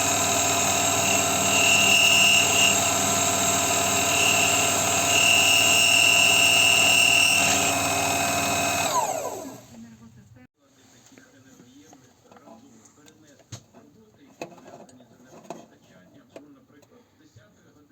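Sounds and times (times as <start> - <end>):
high-pitched cutting squeal: 0.0 - 9.4
metal lathe running: 0.0 - 9.7
lathe motor winding down: 0.0 - 9.8.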